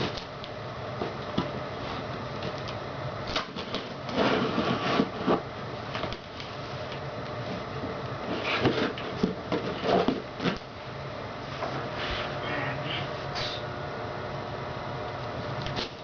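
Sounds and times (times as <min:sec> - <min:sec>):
steady low hum: 0:00.0 - 0:16.0
cardboard box rustling and scraping: 0:03.6 - 0:05.5, 0:08.2 - 0:10.6.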